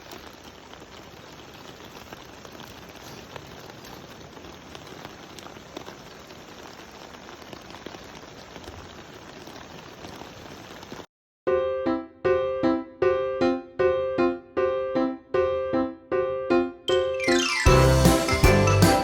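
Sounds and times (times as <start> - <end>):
raindrop ticks: 0.0 - 11.1
steady rain falling: 0.0 - 11.1, 17.2 - 19.0.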